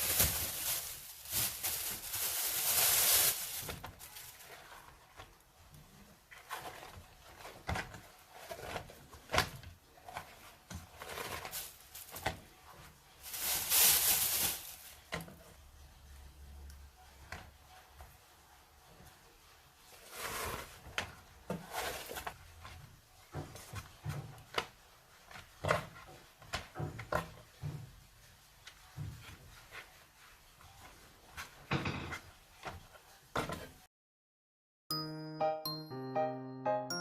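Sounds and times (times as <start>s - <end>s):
kitchen hiss: 0.0s - 3.8s, 13.2s - 15.0s.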